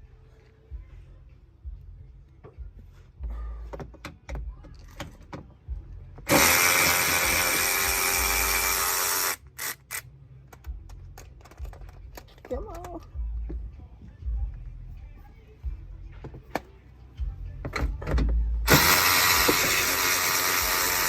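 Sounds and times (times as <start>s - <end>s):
power drill running: 6.3s - 9.8s, 18.7s - 21.0s
tools clicking and knocking: 10.5s - 13.6s.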